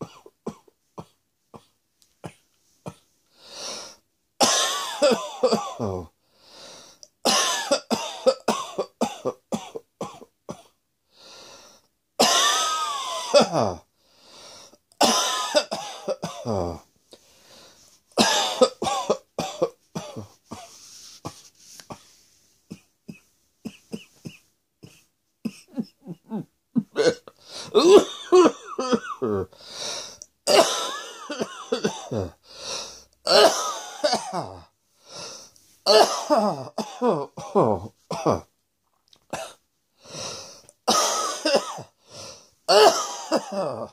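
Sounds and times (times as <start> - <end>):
drawn-in breaths: 3.2 - 4.0, 6.2 - 7.1, 11.1 - 11.9, 14.0 - 14.8, 17.1 - 18.0, 29.5 - 30.3, 32.4 - 33.1, 34.9 - 35.7, 40.0 - 40.8, 42.0 - 42.6
person coughing: 4.4 - 6.1, 7.3 - 10.7, 12.2 - 13.8, 15.0 - 16.8, 18.2 - 22.0, 22.7 - 29.5, 30.5 - 32.4, 33.3 - 34.7, 35.9 - 38.5, 39.4 - 39.6, 40.2 - 42.0, 42.7 - 43.9.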